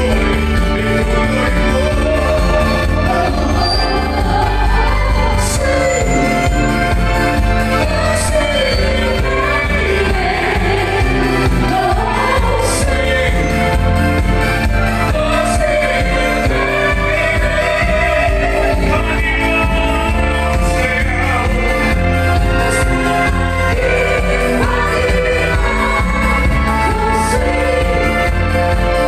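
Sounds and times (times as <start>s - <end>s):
person singing: 0.0s - 6.9s, 15.0s - 29.0s
bass line: 0.0s - 29.0s
live band playing: 0.0s - 29.0s.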